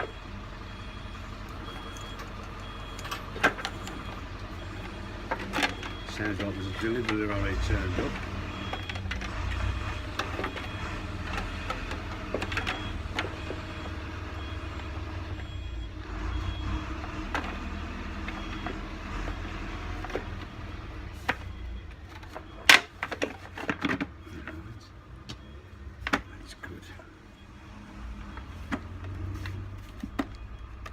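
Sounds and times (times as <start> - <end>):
short reversing beeps: 0.0 - 11.4
truck engine rumbling: 0.0 - 30.9
sharp clicks and knocks: 25.2 - 26.4.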